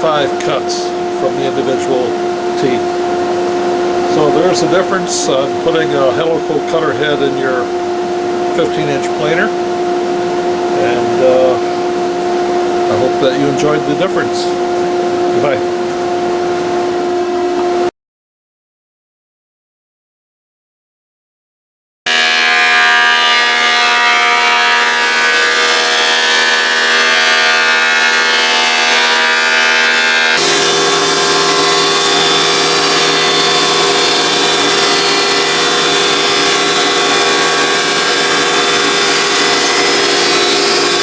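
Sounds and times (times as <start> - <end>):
thickness planer whining: 0.0 - 17.9, 22.1 - 41.0
low hum: 0.3 - 17.9.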